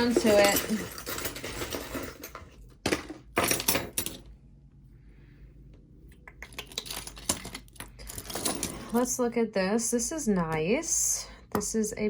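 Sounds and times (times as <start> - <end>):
jewelry clinking and rattling: 0.0 - 4.3, 6.5 - 9.2.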